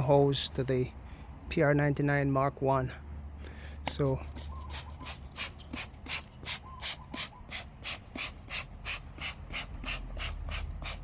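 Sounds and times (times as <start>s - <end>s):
hissing spray bursts: 4.3s - 11.0s.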